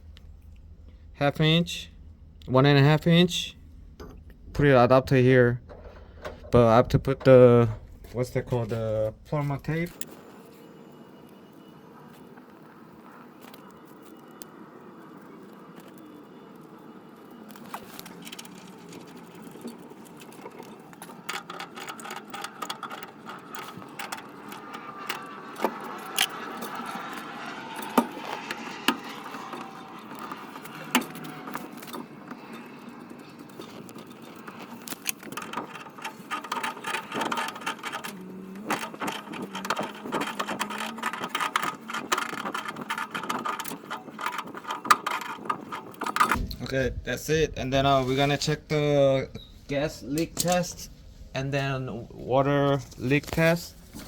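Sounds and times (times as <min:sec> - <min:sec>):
metal tools clicking and scraping: 0:20.2 - 0:46.4.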